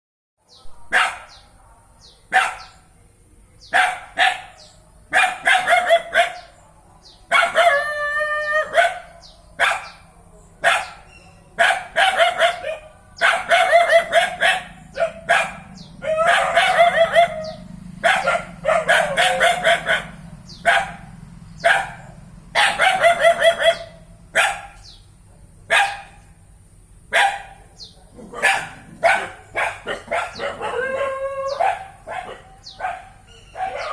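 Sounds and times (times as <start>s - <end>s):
dog barking: 0.8s - 2.9s, 3.6s - 6.6s, 7.3s - 7.8s, 8.6s - 25.0s, 25.7s - 26.4s, 27.1s - 33.9s.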